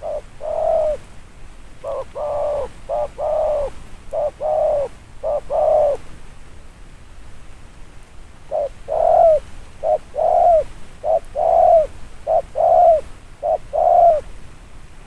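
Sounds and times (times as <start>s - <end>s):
dove cooing: 0.0s - 1.1s, 1.8s - 6.0s, 8.5s - 14.3s.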